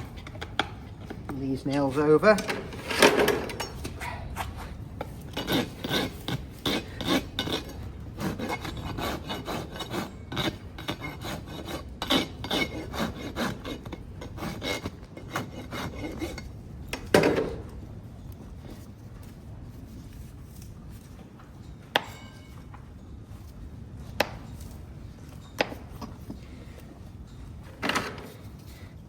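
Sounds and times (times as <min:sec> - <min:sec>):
rasp filing hoof: 0:05.0 - 0:16.5.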